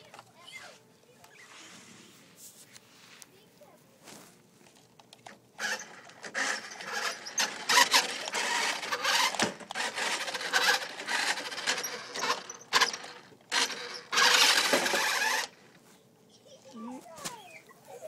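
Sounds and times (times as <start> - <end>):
mechanical rattling and clattering: 5.6 - 15.6.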